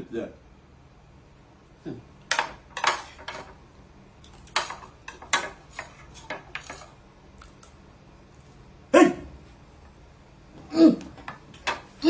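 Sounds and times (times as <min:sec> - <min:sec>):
cutlery scraping a plate: 0:02.3 - 0:03.6, 0:04.3 - 0:07.0.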